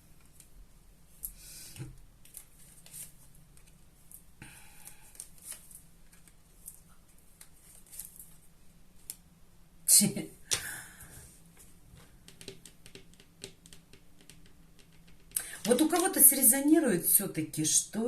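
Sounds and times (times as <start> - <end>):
cards rustling: 4.9 - 8.4.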